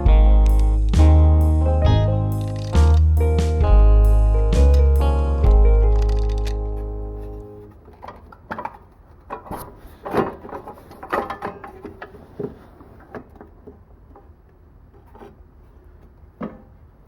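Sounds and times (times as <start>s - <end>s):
metal engine parts clunking: 7.7s - 14.3s.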